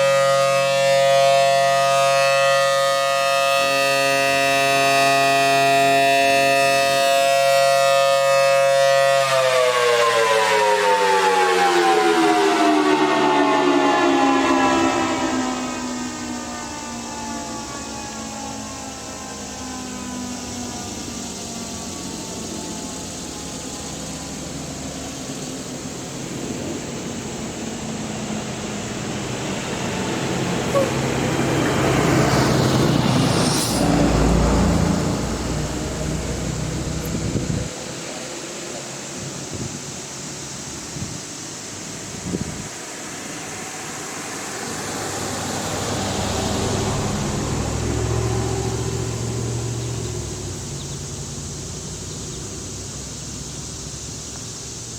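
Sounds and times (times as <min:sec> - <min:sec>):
warning siren winding down: 0:00.0 - 0:24.8, 0:29.3 - 0:37.7, 0:43.4 - 0:53.3
steady hiss: 0:20.4 - 0:54.9
low engine hum: 0:20.5 - 0:38.2, 0:43.4 - 0:54.9.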